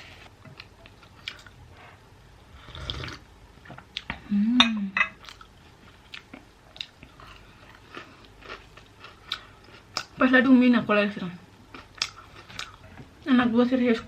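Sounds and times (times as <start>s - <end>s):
person chewing food: 0.4s - 2.0s, 5.2s - 10.2s, 11.6s - 13.2s.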